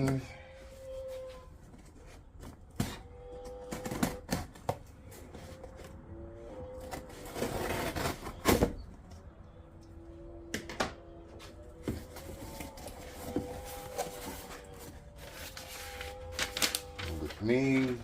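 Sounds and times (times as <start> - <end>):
cardboard box rustling and scraping: 6.6 - 8.8, 11.8 - 18.0.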